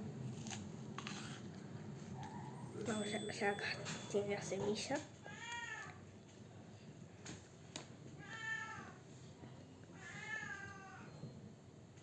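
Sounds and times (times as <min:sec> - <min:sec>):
cat meowing: 0:05.2 - 0:06.0, 0:08.2 - 0:09.0, 0:10.0 - 0:11.2.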